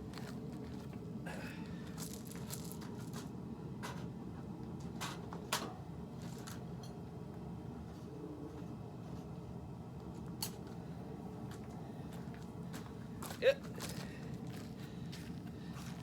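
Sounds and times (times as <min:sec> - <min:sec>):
steady low hum: 0:00.0 - 0:16.0.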